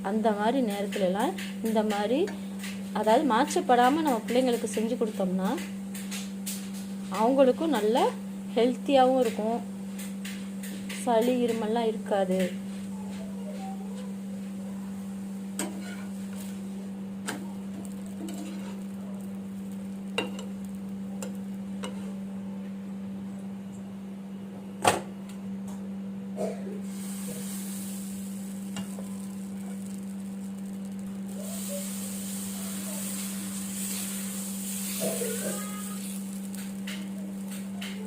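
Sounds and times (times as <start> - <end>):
batter sizzling on a griddle: 5.6 - 7.1, 14.1 - 22.2, 26.8 - 38.0.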